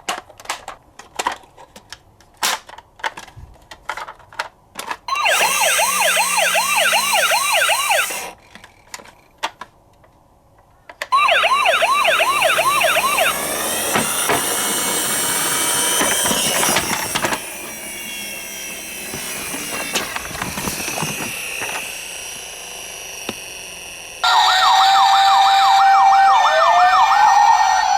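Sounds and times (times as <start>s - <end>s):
steady siren tone: 5.1s - 8.3s, 11.1s - 19.9s, 21.8s - 27.9s
toy police siren yelping: 5.1s - 8.4s, 11.1s - 17.4s, 24.2s - 27.9s.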